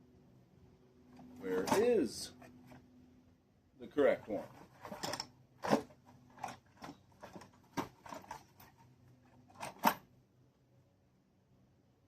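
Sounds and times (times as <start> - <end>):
small parts and tools clinking: 1.1 - 2.8, 4.2 - 10.1.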